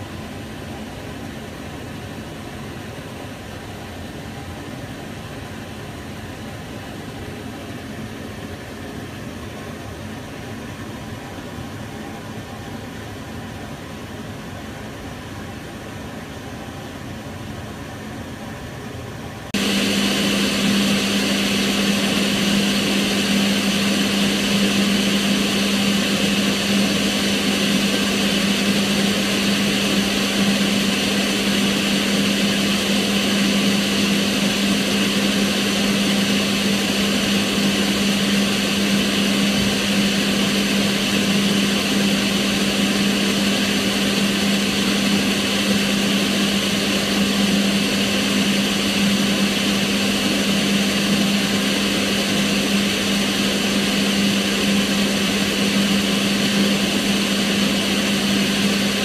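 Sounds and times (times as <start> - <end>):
extractor fan running: 19.1 - 59.0.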